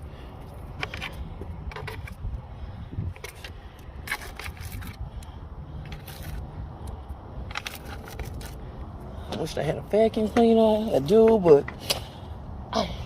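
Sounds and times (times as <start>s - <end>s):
scraping and brushing plastic: 3.1s - 5.1s, 5.8s - 6.5s, 7.5s - 8.7s.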